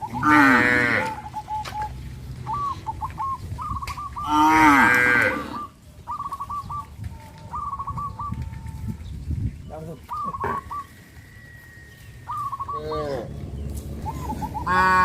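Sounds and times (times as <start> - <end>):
cow mooing: 0.1 - 1.2, 4.3 - 5.7.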